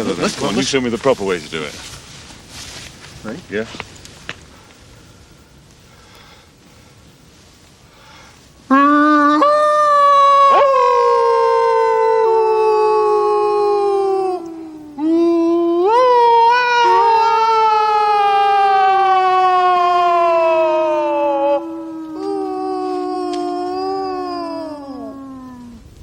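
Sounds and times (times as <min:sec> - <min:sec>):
men howling like wolves: 0:08.7 - 0:26.0.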